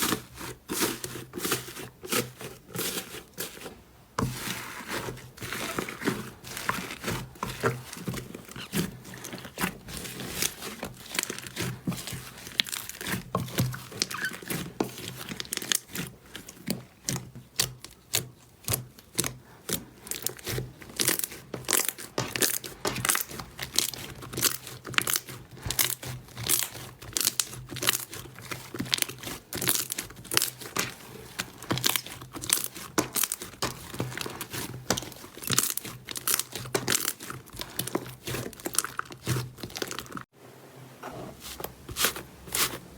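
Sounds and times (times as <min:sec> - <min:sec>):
sticky slime crackling: 0:00.0 - 0:40.3, 0:41.4 - 0:42.9.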